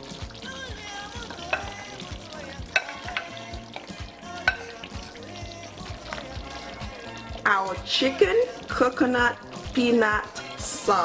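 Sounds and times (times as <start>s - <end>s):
spoon stirring sauce: 0.0s - 9.8s
sizzling: 0.0s - 11.0s
spoon clinking against pot: 1.1s - 6.8s.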